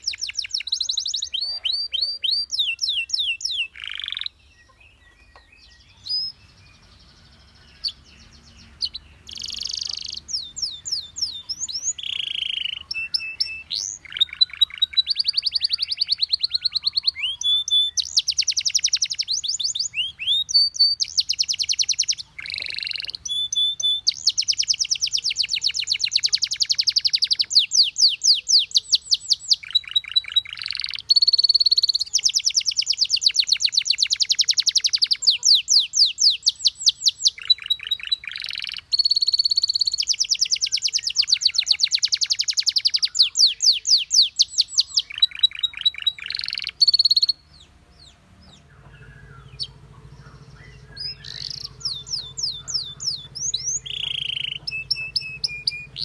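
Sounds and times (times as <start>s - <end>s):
canary trilling: 0.0s - 56.0s
canary whistled notes: 9.3s - 15.1s, 50.6s - 56.0s.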